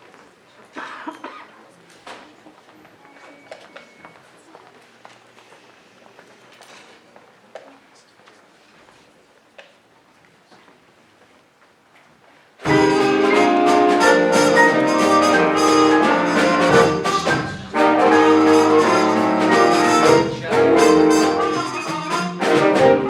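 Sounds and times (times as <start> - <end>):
brass section loud chords: 12.6 - 23.0
drums: 12.6 - 23.0
jazz big band playing: 12.6 - 23.0.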